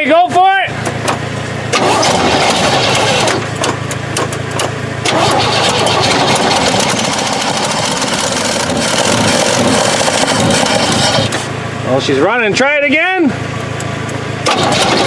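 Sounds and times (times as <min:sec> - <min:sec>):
truck engine cranking and running: 0:00.3 - 0:12.5, 0:13.5 - 0:15.0
rapid engine ticking: 0:00.7 - 0:11.5, 0:14.4 - 0:15.0.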